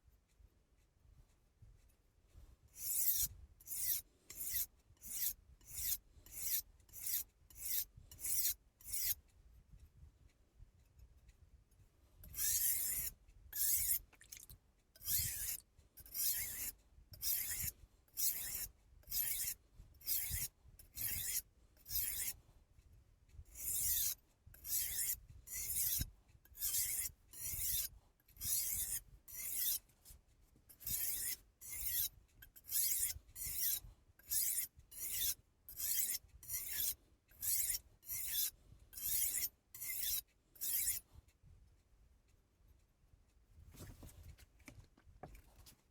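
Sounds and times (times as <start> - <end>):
knife scraping on whetstone: 2.8 - 9.2, 12.2 - 22.4, 23.6 - 29.8, 30.7 - 41.0.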